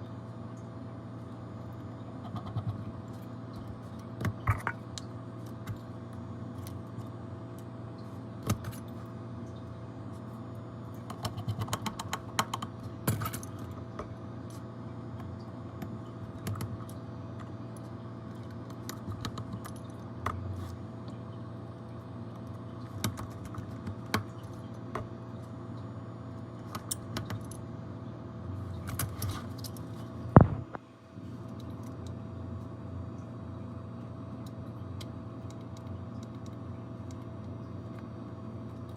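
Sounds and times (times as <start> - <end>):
low electrical hum: 0.0 - 38.9.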